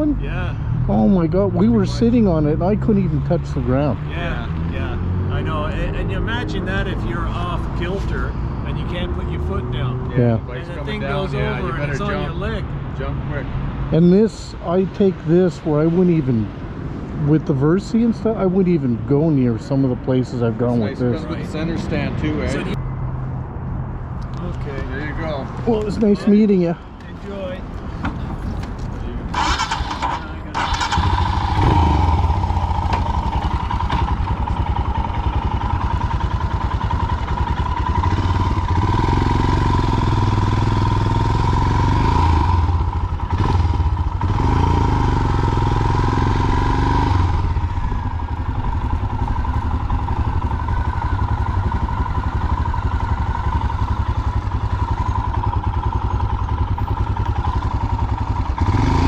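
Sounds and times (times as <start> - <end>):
motorcycle engine starting and running: 27.1 - 59.0.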